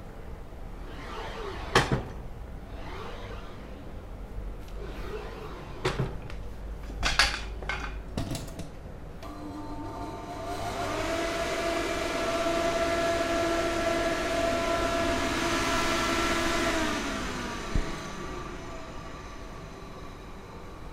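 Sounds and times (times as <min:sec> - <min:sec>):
small electric motor whining: 0:00.8 - 0:04.0.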